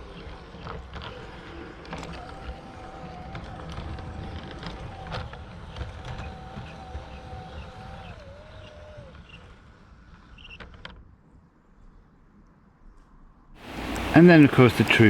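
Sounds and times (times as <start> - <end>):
motor whine: 0.0 - 9.9
model train rumbling: 0.0 - 10.2, 13.6 - 15.0.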